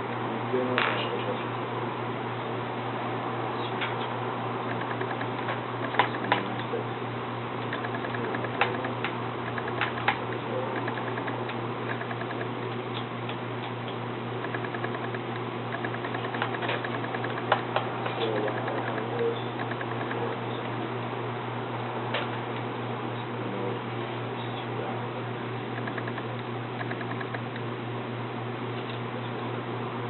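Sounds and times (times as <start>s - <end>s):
steady low hum: 0.0s - 30.0s
laptop parts and tools clicking: 4.7s - 6.6s, 7.7s - 8.9s, 9.5s - 13.0s, 14.4s - 20.2s, 25.8s - 27.6s.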